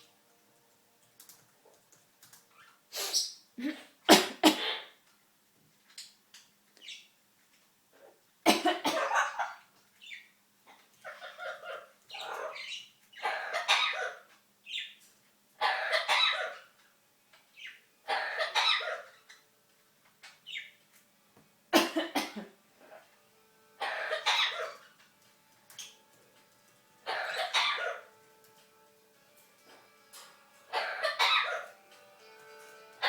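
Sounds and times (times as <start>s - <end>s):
parrot mimicking coughs: 3.6s - 5.0s, 8.4s - 9.6s, 13.2s - 14.2s, 15.6s - 16.6s, 18.1s - 19.1s, 21.7s - 22.6s, 23.8s - 24.8s, 27.0s - 28.0s, 30.7s - 31.7s.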